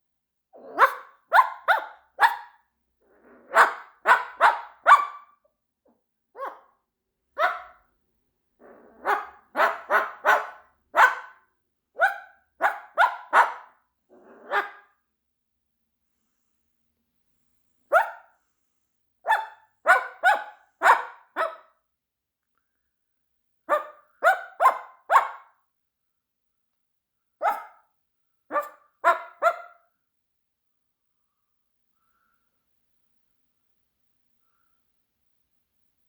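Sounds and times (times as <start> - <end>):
cockatoo imitating dog barks: 0.6 - 2.6, 3.4 - 5.3, 8.6 - 11.4, 12.0 - 14.9, 17.9 - 18.3, 19.3 - 21.7, 23.7 - 25.6, 27.4 - 27.8, 28.5 - 29.8.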